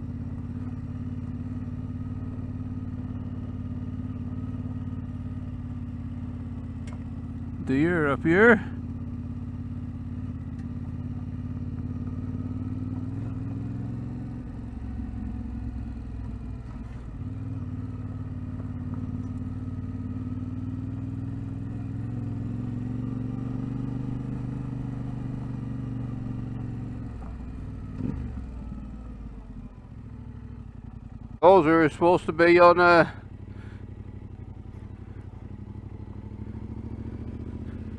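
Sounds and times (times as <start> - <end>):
vehicle engine running at low revs: 0.0 - 37.9.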